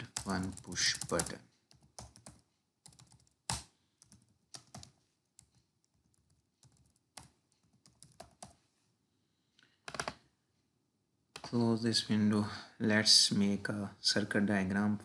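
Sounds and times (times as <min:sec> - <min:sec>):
typing on computer keyboard: 0:00.0 - 0:08.6, 0:09.9 - 0:10.2.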